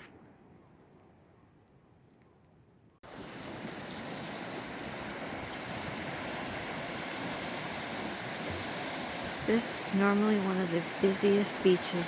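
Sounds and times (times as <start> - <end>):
ocean waves washing on beach: 3.0 - 12.0
wind on microphone: 3.1 - 12.0.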